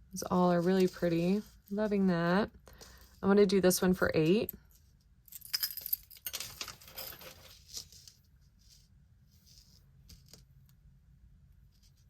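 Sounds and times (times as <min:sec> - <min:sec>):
metal jewelry clinking: 0:05.3 - 0:08.0.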